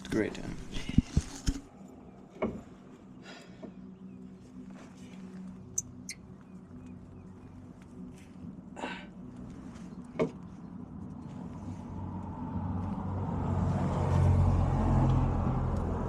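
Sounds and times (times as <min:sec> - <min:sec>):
vehicle engine approaching: 0:09.4 - 0:16.0.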